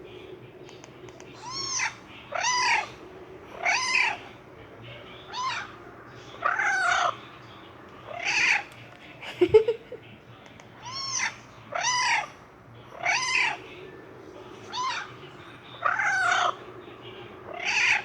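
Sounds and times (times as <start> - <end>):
recorded cat meows: 1.4 - 2.9, 10.8 - 12.3, 13.0 - 13.6.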